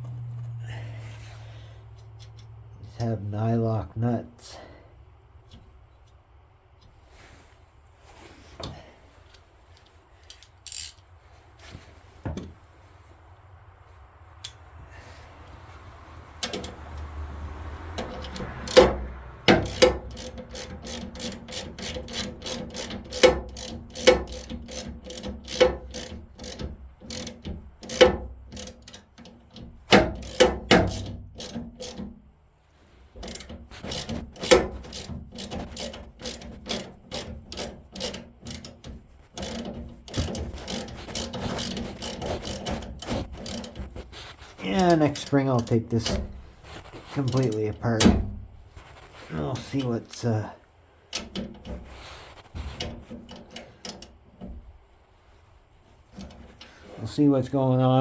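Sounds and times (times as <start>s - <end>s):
metal clicks: 2.0s - 2.6s, 8.6s - 11.1s, 16.3s - 17.1s, 17.8s - 32.2s, 33.2s - 48.6s, 49.3s - 50.4s, 51.1s - 54.7s, 56.1s - 56.8s
ratchet wrench clicking: 10.3s - 11.0s, 16.4s - 32.1s, 33.2s - 44.0s, 44.8s - 46.3s, 47.2s - 47.7s, 53.2s - 54.2s.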